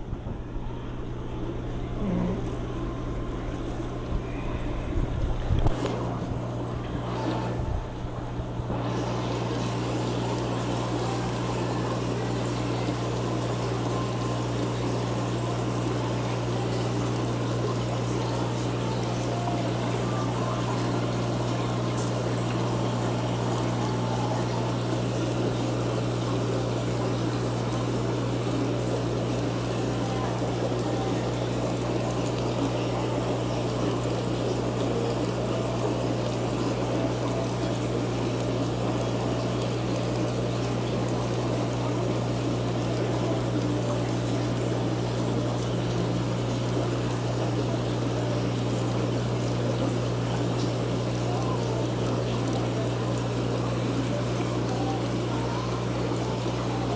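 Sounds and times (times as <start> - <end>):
aquarium pump hum: 0.0 - 56.9
water trickling and bubbling: 0.0 - 56.9.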